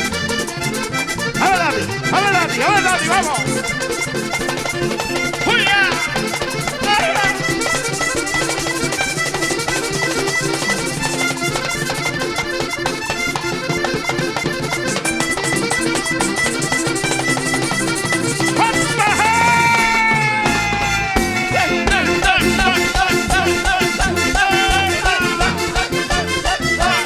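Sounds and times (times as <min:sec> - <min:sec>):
bass: 0:00.0 - 0:04.6, 0:14.2 - 0:27.0
accordion melody: 0:00.0 - 0:27.0
fast percussion rhythm: 0:00.4 - 0:27.0.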